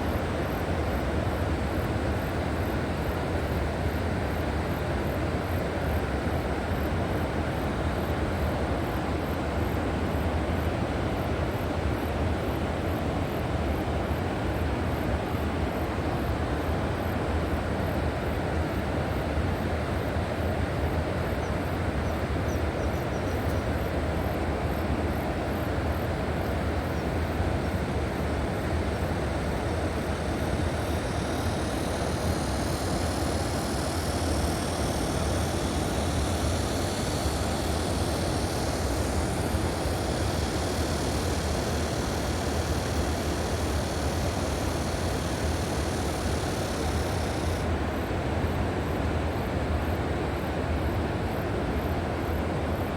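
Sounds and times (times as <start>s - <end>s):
bright hiss: 29.5s - 47.7s.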